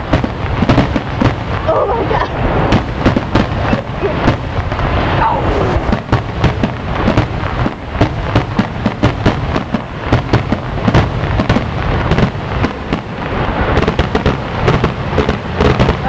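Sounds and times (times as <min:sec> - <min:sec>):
fireworks bangs and crackling: 0:00.0 - 0:16.0
low rumble of shells bursting: 0:00.0 - 0:16.0.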